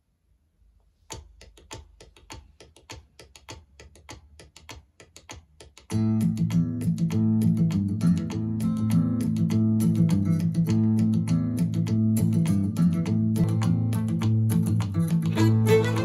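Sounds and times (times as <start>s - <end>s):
guitar music through speaker: 6.0s - 16.0s.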